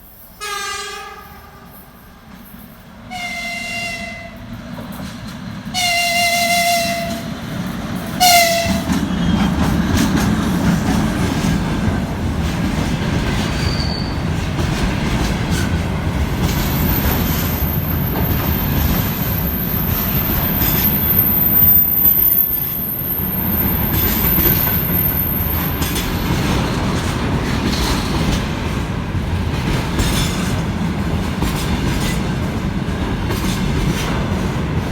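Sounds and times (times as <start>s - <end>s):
train rumbling past: 0.0s - 34.9s
electric locomotive horn blasts: 0.4s - 1.8s, 3.1s - 4.5s, 5.7s - 7.4s, 8.2s - 9.0s
high-pitched wheel squeal on rails: 13.4s - 14.3s, 16.4s - 26.3s.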